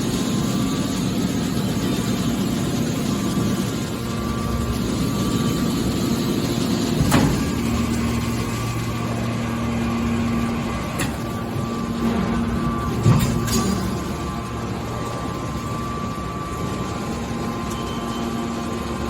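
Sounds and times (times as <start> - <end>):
baler machine drone: 0.0 - 19.0
sharp machine knocks: 7.0 - 7.9.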